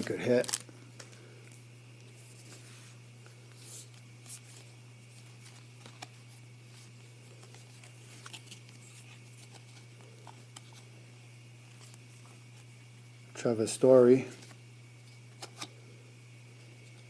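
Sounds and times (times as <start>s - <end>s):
trading cards being handled: 0.0s - 10.9s, 14.2s - 15.8s
low electrical hum: 0.0s - 17.0s.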